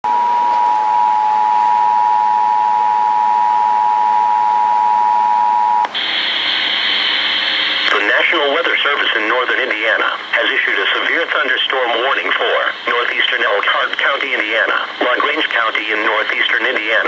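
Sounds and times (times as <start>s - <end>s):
radio hiss: 5.8s - 17.0s.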